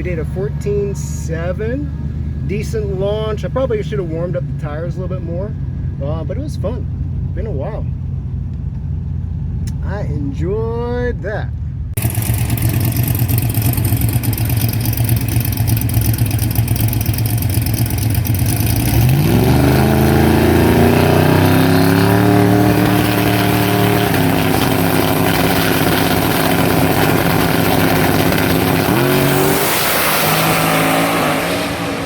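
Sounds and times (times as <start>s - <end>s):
car engine revving: 11.9s - 32.0s.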